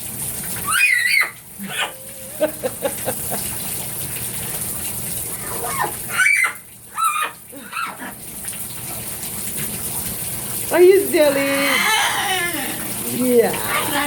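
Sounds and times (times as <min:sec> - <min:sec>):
shower water running: 0:00.0 - 0:14.0
parrot barking calls: 0:00.6 - 0:02.1, 0:05.4 - 0:08.0, 0:11.6 - 0:12.9.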